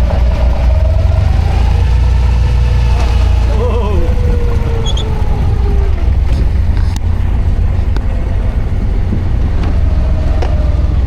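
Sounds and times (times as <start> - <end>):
boat engine rumbling: 0.0 - 11.0.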